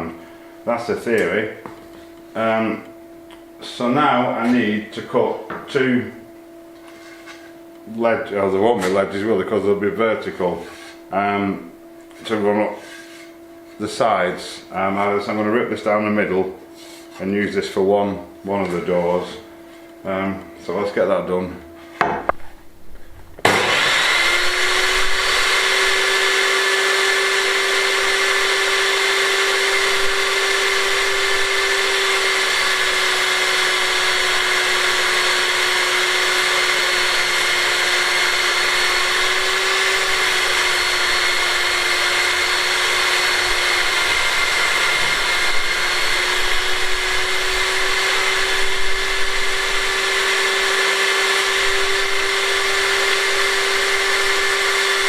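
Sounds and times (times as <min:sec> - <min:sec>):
table saw ripping wood: 0:23.4 - 0:55.0.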